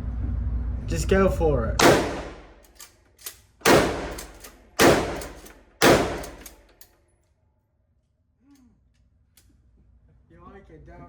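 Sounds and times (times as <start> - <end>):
shotgun shots echoing: 1.8 - 2.7, 3.6 - 6.7.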